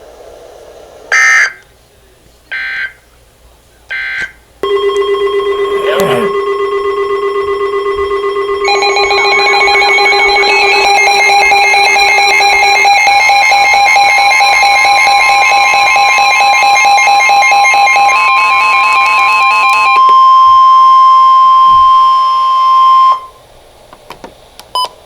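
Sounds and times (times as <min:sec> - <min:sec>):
warbling electronic alarm: 0:01.1 - 0:01.6, 0:02.5 - 0:03.0, 0:03.9 - 0:23.4
steady single alert tone: 0:04.6 - 0:18.0.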